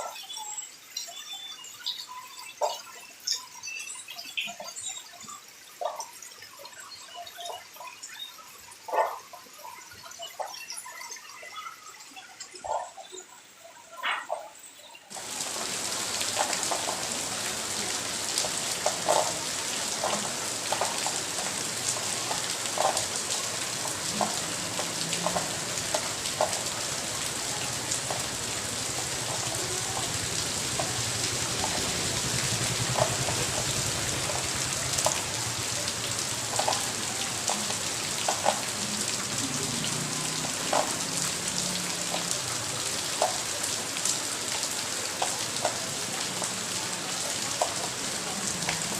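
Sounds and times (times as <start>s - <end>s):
heavy raindrops plinking: 0.0s - 13.3s, 14.0s - 48.9s
steady rain hiss: 0.0s - 48.9s.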